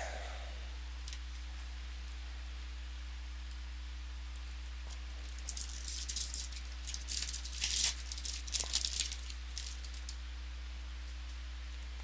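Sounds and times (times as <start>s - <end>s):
steady low hum: 0.0s - 5.2s
foil wrapper crinkling: 5.2s - 10.2s.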